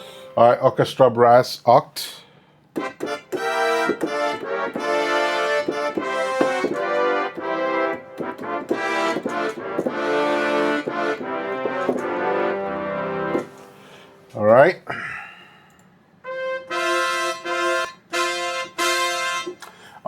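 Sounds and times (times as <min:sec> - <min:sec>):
synthesizer brass chords: 0:00.0 - 0:00.6, 0:02.8 - 0:14.3, 0:16.2 - 0:19.6.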